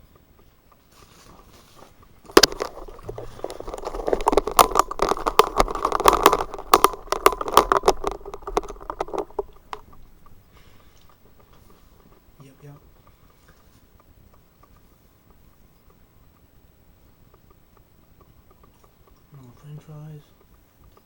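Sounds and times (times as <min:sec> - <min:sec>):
paper packaging rustling and crinkling: 0:00.9 - 0:09.9.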